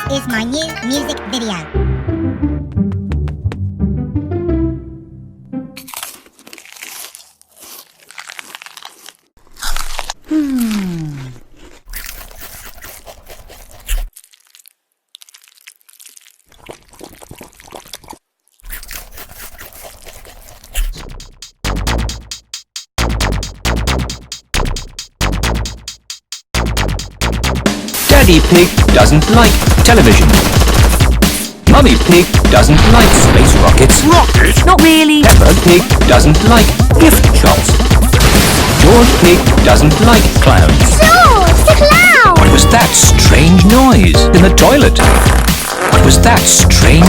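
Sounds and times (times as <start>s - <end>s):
sound-effect hits: 32.6s - 34.6s, 38.0s - 40.9s, 45.0s - 46.1s
heavy rap beat with bass: 38.9s - 44.6s.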